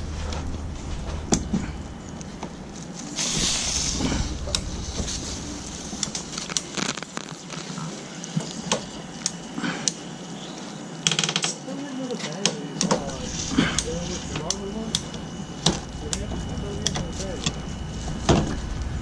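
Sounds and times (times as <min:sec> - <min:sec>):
short hiss: 0:03.1 - 0:07.2.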